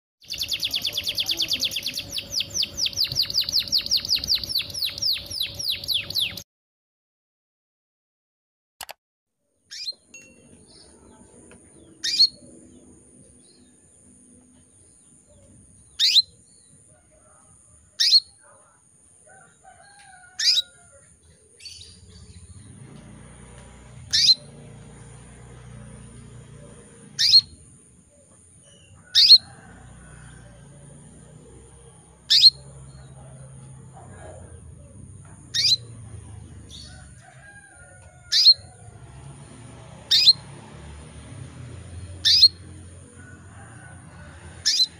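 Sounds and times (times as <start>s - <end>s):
canary calls: 0.2s - 6.4s, 9.7s - 10.0s, 11.8s - 12.9s, 15.3s - 16.7s, 17.9s - 18.5s, 20.2s - 22.9s, 24.0s - 24.8s, 26.0s - 37.3s, 38.2s - 39.1s, 40.0s - 40.6s, 41.9s - 44.9s.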